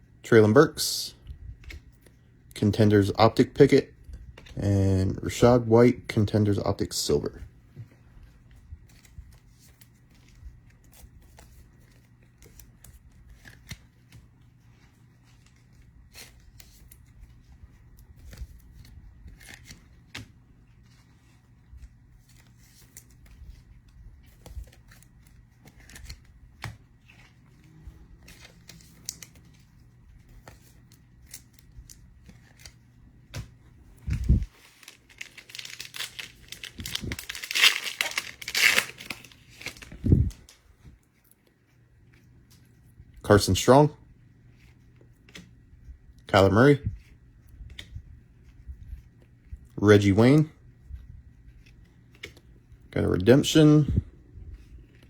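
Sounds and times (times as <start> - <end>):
trading cards shuffling: 6.3 - 40.6
foil pack tearing and crinkling: 34.5 - 40.0.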